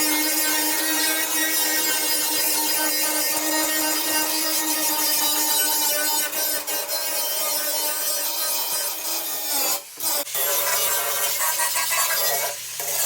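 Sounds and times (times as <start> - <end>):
power tool cutting metal: 0.0 - 13.0.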